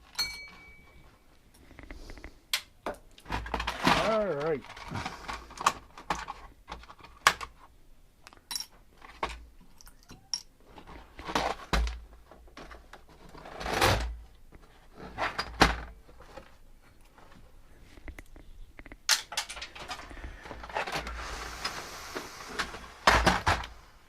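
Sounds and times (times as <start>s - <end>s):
metal parts and tools clattering: 8.5s - 11.8s, 19.1s - 21.1s.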